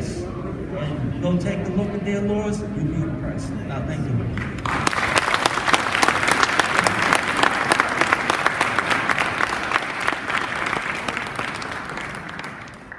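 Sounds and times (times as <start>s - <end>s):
audience applauding: 4.4s - 12.9s.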